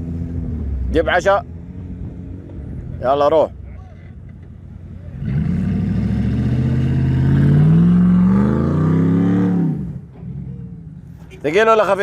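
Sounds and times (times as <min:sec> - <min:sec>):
engine revving hard: 0:05.2 - 0:10.0.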